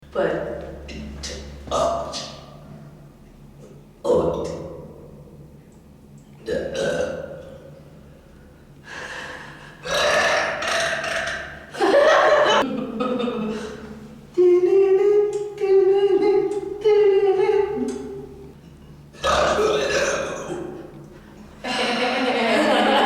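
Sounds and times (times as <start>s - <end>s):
woman burping: 6.5s - 7.2s, 9.8s - 11.6s.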